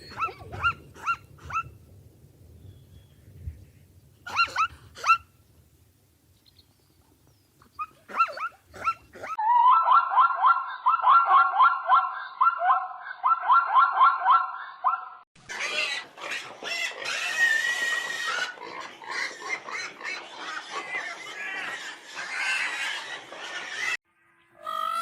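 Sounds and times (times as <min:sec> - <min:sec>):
dog yelping: 0:00.0 - 0:01.7, 0:04.3 - 0:05.2, 0:07.8 - 0:15.8
pigs squealing and grunting: 0:15.4 - 0:24.0, 0:24.6 - 0:25.0.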